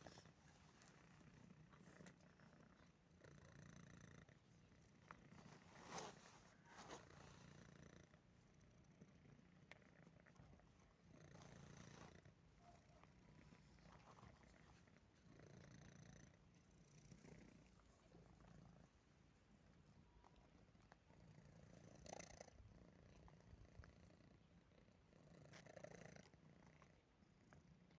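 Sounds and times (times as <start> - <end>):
cat purring: 0.0 - 28.0.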